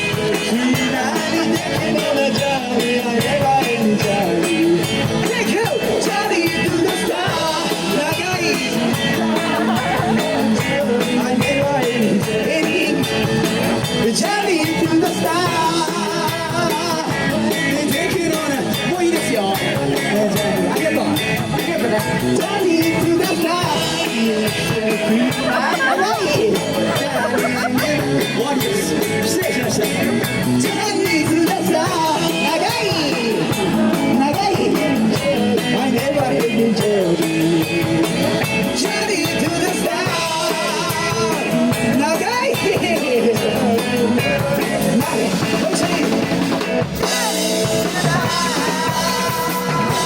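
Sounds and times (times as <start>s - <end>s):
guitar: 0.0s - 50.0s
person singing: 0.0s - 50.0s
steady drum beat: 0.0s - 50.0s.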